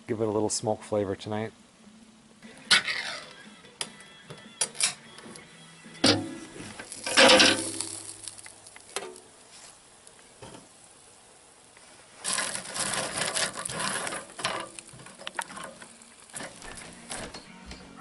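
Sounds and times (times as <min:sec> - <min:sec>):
meat sizzling and crackling: 0:06.2 - 0:17.3.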